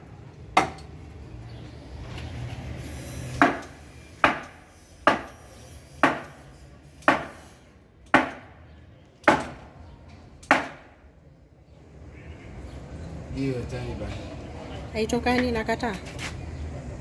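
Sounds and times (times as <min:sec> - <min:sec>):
blows knocking on timber: 0:03.4 - 0:05.4, 0:06.0 - 0:06.4, 0:08.1 - 0:08.6.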